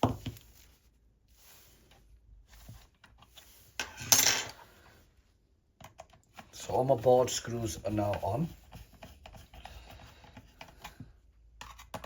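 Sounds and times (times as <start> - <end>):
metal tools clinking on workbench: 3.8 - 4.6.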